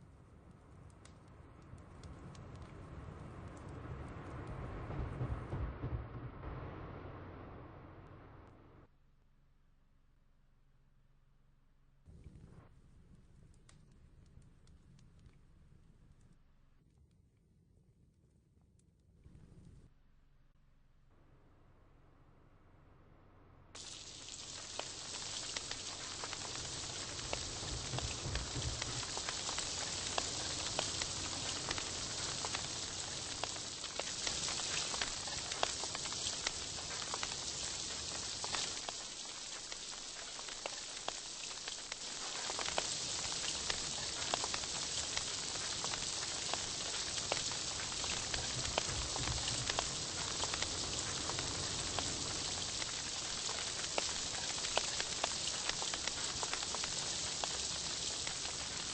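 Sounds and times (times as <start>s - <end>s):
low hum: 1.8s - 8.9s
meat sizzling on a grill: 23.8s - 58.9s.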